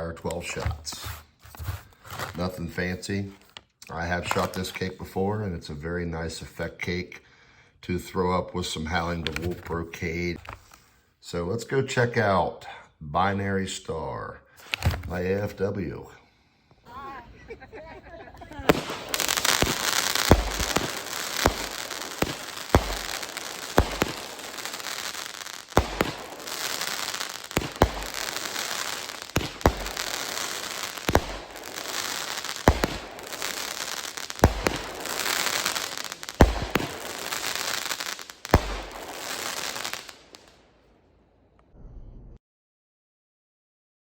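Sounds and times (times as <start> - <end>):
firework bangs: 18.4 - 40.6
firework crackling and sizzling: 18.4 - 40.7.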